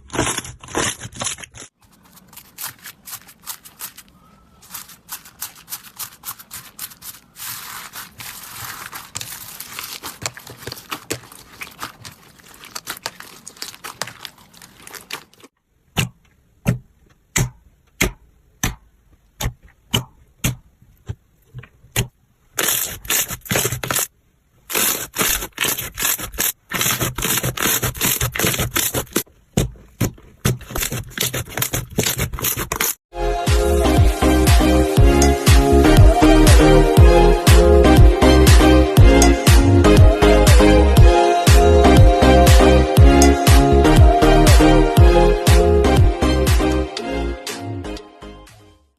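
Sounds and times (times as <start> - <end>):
slime crackling and scraping: 0.0 - 15.6, 19.4 - 33.0
slime popping: 2.3 - 15.5.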